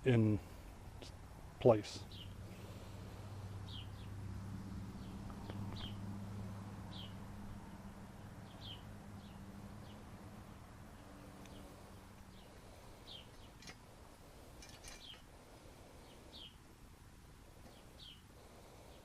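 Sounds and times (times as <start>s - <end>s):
low steady hum: 0.0s - 19.0s
small bird chirping: 2.0s - 2.4s, 3.5s - 4.2s, 4.9s - 6.1s, 6.8s - 7.2s, 8.2s - 10.1s, 11.0s - 13.8s, 14.5s - 15.3s, 16.0s - 16.6s, 17.6s - 18.3s.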